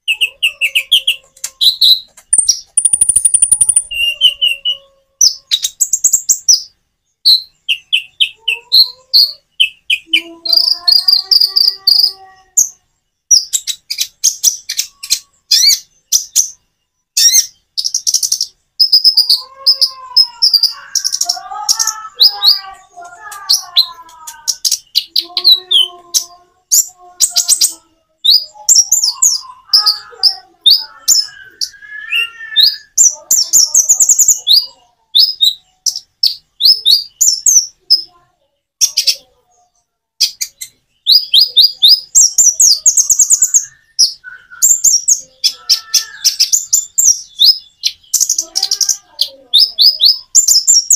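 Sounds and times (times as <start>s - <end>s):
lower bird warbling: 0.0s - 5.9s, 18.8s - 35.9s
bird chirping and twittering: 0.0s - 50.9s.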